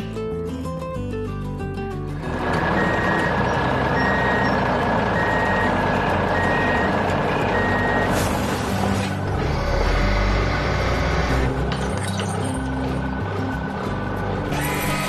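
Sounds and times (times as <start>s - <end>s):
truck engine running: 2.1s - 15.0s
reversing alarm beeping: 2.8s - 3.3s, 3.9s - 8.3s.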